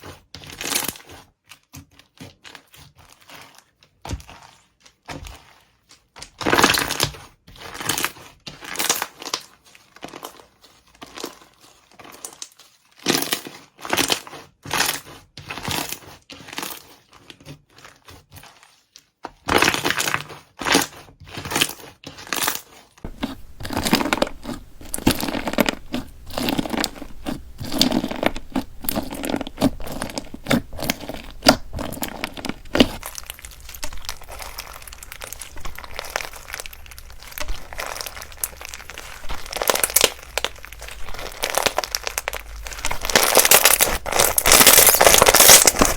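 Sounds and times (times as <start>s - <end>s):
crunchy slime being squeezed: 23.1s - 45.9s.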